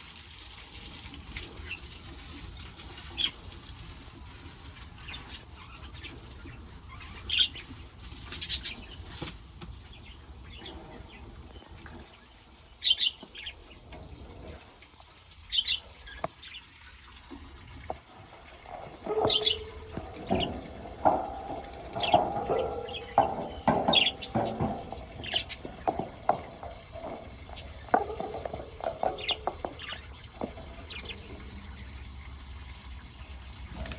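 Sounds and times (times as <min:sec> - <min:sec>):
birds chirping: 0:04.9 - 0:09.2, 0:09.8 - 0:33.9
faint rushing water: 0:10.6 - 0:33.9.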